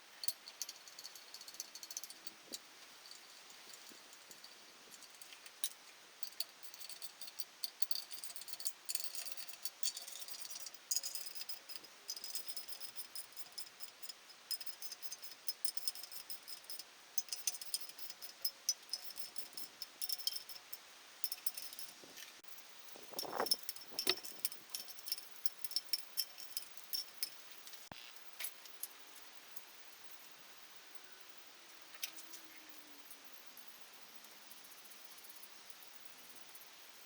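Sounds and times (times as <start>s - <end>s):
small metal tools clinking: 0.2s - 29.0s.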